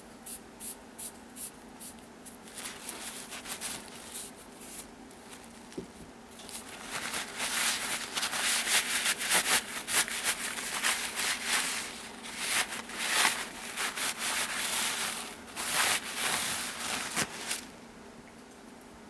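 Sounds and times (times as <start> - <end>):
hands rubbing and scraping parts: 6.4 - 17.7.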